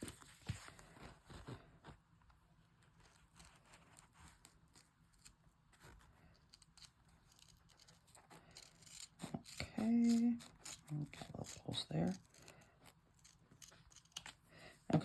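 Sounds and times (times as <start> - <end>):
scissors snipping vinyl: 6.3 - 14.4.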